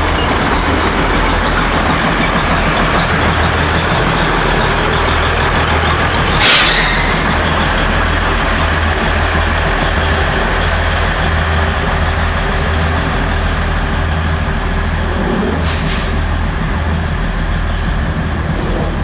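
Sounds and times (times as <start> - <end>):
diesel locomotive humming: 0.0 - 19.0
short hisses: 6.2 - 7.1.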